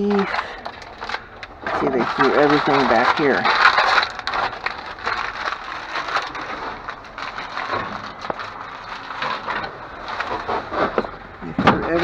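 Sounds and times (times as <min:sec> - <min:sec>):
rubbish crunching and crinkling: 0:00.0 - 0:12.0.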